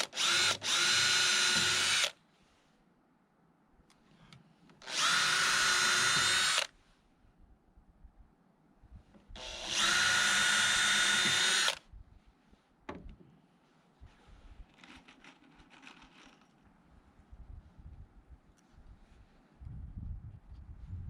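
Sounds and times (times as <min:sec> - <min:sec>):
power drill running: 0:00.0 - 0:02.2, 0:04.8 - 0:06.7, 0:09.4 - 0:11.8.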